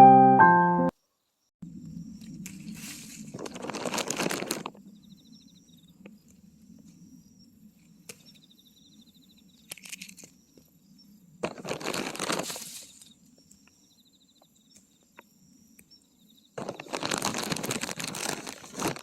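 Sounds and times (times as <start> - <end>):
leaves and twigs rustling: 2.2 - 5.2, 9.6 - 10.4, 11.4 - 13.7, 16.6 - 19.0.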